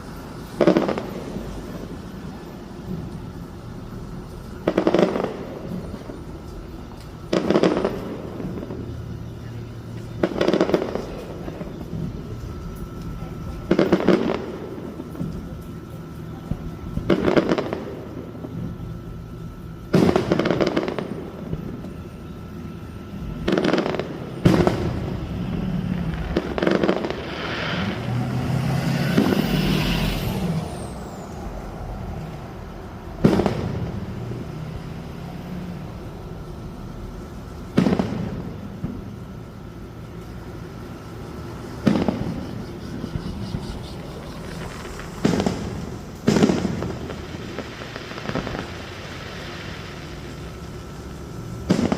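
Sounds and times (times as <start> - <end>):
fireworks crackling: 0.0 - 51.9
firework shells bursting: 23.4 - 34.4, 40.9 - 51.9.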